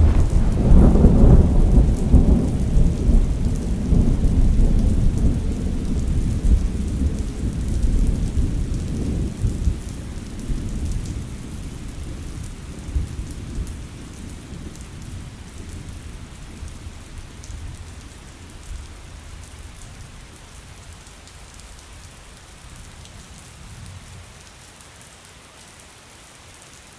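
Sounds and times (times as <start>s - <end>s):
thunder rumbling: 0.0s - 18.8s
steady rain: 0.0s - 26.9s.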